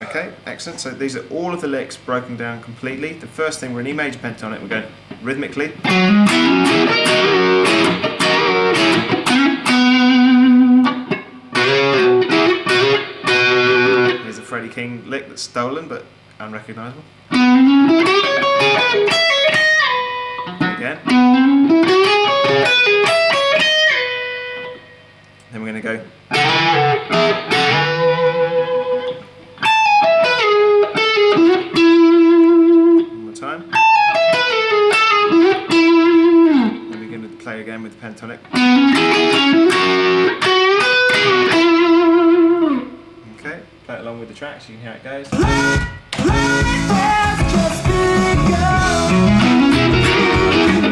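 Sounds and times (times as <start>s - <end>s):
electric guitar lick: 5.0s - 14.8s, 17.3s - 25.5s, 26.2s - 37.4s, 38.4s - 43.3s, 45.3s - 50.9s.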